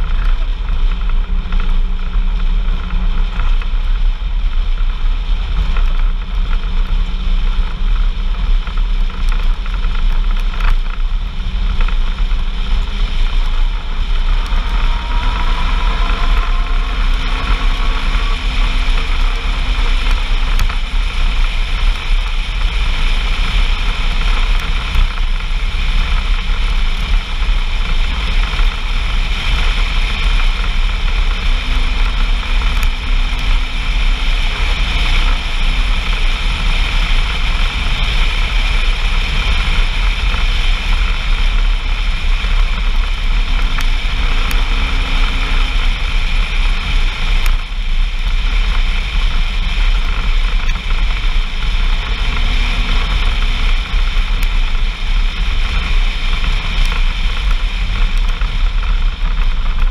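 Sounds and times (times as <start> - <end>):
vehicle engine rumble: 0.0 - 59.9
wind noise on microphone: 0.0 - 59.9
faint rising tone: 13.6 - 19.7.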